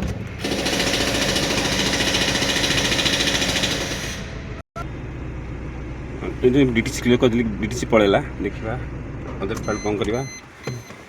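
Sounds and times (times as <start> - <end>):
diesel engine clatter: 0.0 - 11.0
lower steady engine running: 4.3 - 10.4.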